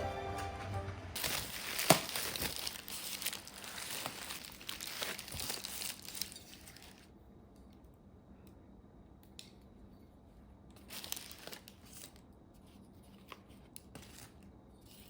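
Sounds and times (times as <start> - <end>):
packaging crinkling: 1.2 - 7.1, 10.8 - 12.2.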